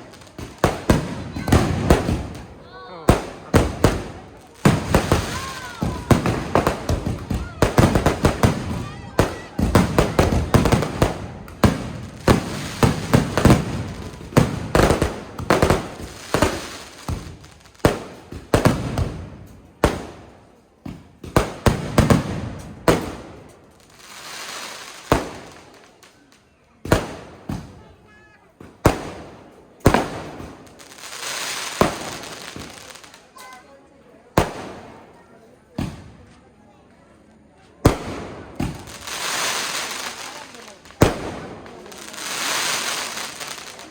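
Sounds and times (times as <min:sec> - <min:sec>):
fireworks crackle: 0:00.0 - 0:20.6, 0:21.2 - 0:36.5, 0:37.2 - 0:43.9
fireworks bangs: 0:00.0 - 0:26.1, 0:26.8 - 0:36.3, 0:37.8 - 0:43.9.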